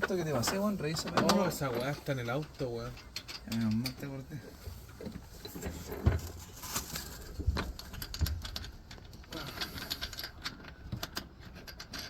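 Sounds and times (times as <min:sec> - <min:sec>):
hand tools clinking on metal: 0:00.0 - 0:04.4.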